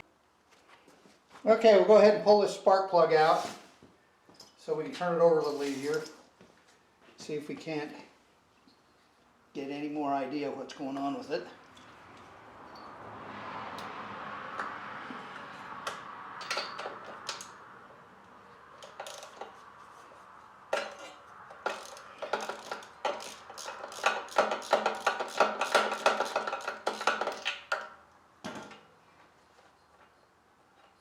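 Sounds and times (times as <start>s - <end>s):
metal tools clinking: 16.4s - 17.6s, 20.7s - 27.9s
socket ratchet clicking: 18.8s - 19.5s, 20.8s - 27.9s.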